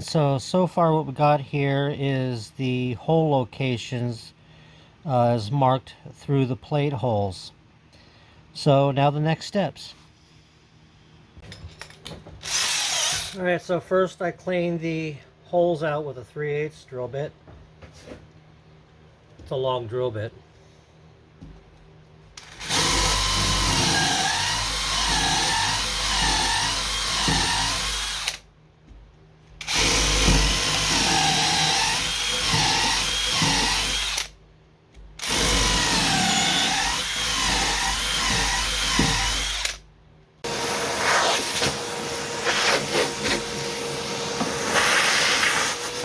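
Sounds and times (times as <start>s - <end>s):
electric drill drilling: 12.4s - 13.4s, 22.4s - 28.4s, 29.6s - 34.3s, 35.2s - 39.8s, 40.5s - 46.0s.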